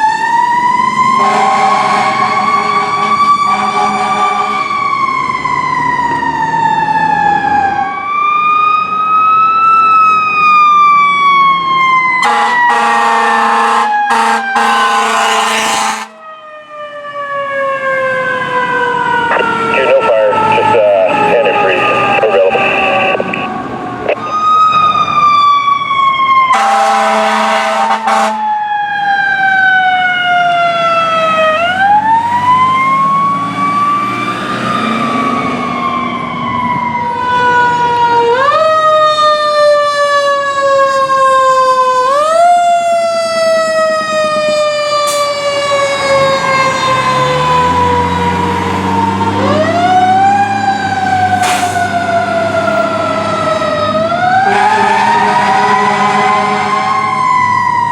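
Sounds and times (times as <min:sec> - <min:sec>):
fire engine siren: 0:00.0 - 0:57.9
truck air horn blast: 0:01.2 - 0:04.7, 0:12.2 - 0:16.2, 0:26.5 - 0:28.4, 0:54.4 - 0:57.0.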